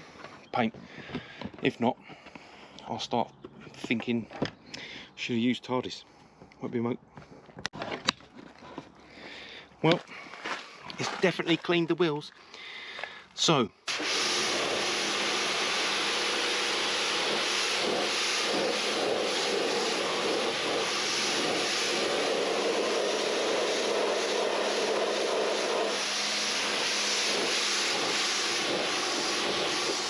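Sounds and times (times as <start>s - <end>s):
pressure washer motor hum: 13.9s - 30.0s
water jet spraying hiss: 13.9s - 30.0s.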